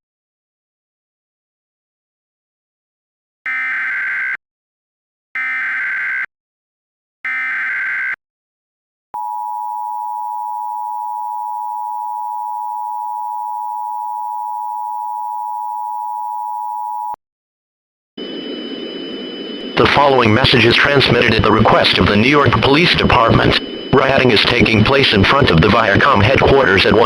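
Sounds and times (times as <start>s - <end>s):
two-tone alarm: 3.5s - 4.4s, 5.4s - 6.3s, 7.3s - 8.2s, 9.2s - 17.2s, 18.2s - 27.0s
warbling data bursts: 18.2s - 27.0s.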